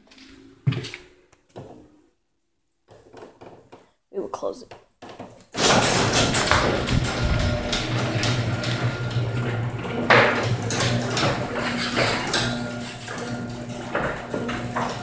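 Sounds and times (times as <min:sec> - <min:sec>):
garage door bang: 0:05.6 - 0:15.0
garage door opener motor hum: 0:05.6 - 0:15.0.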